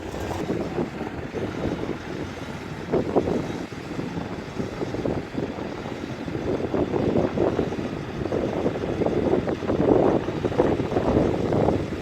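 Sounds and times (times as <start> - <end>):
heavy diesel machinery clattering: 0.0 - 2.6.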